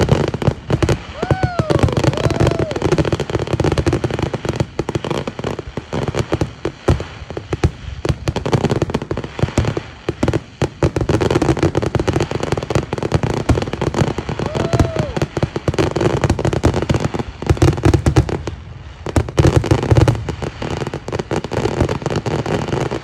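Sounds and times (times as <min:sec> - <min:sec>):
fireworks bangs and pops: 0:00.0 - 0:23.0.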